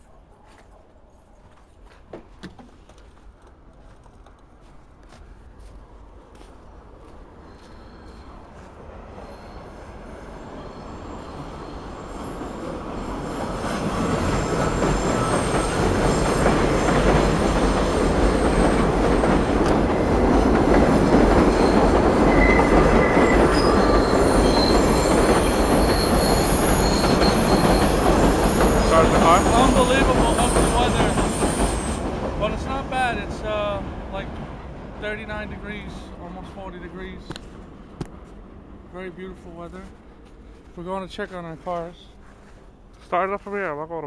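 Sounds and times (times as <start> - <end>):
subway train rumbling past: 2.8 - 44.0
metallic wheel squeals: 7.5 - 8.5, 9.1 - 12.8, 21.5 - 32.0.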